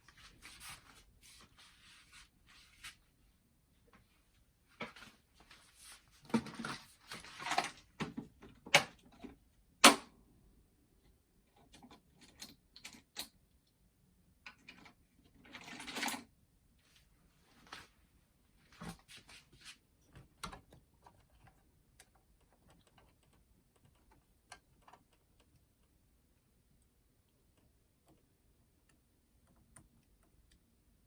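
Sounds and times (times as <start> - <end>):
small parts clicking and tapping: 20.1 - 26.1.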